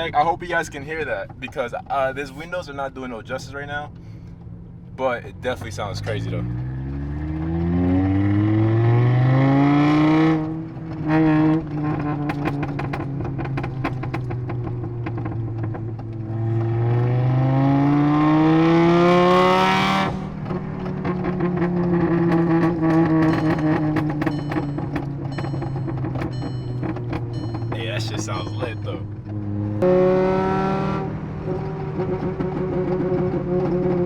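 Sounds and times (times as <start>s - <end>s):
exhaust crackles and pops: 0.0s - 30.1s, 31.1s - 34.0s
car engine revving: 0.0s - 34.0s.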